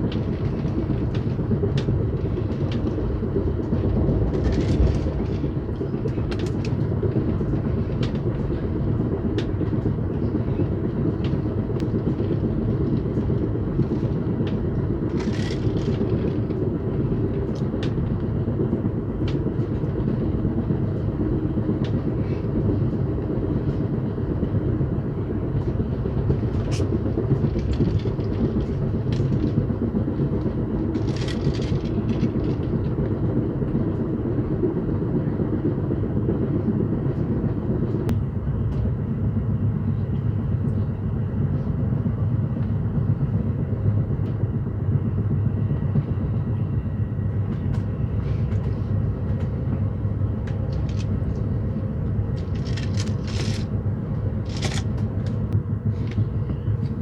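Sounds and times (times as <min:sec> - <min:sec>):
train rumbling on track: 0:00.0 - 0:57.0
clicks and rattles: 0:52.4 - 0:53.7, 0:54.4 - 0:55.4.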